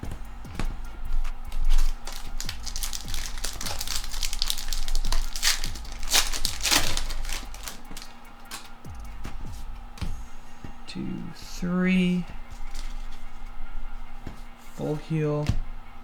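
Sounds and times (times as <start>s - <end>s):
background music with steady beat: 0.0s - 16.0s
foil wrapper crinkling and tearing: 1.5s - 8.7s.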